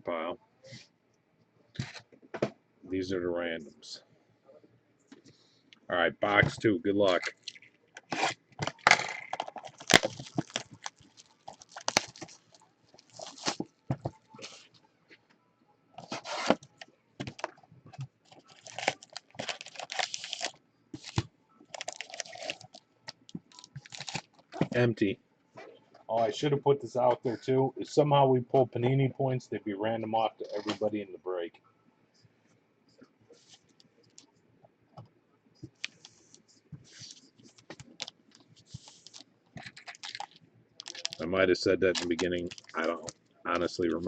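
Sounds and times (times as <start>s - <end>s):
plastic wrapping crinkling and tearing: 7.1s - 14.8s, 18.3s - 24.8s, 36.9s - 41.3s, 41.9s - 43.2s.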